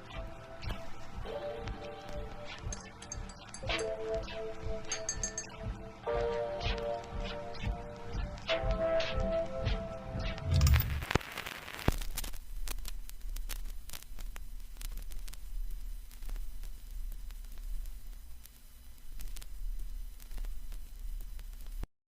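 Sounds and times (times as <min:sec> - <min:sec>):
music: 0:00.0 - 0:11.2
static hiss with crackles: 0:00.0 - 0:21.9
low hum: 0:10.2 - 0:11.2.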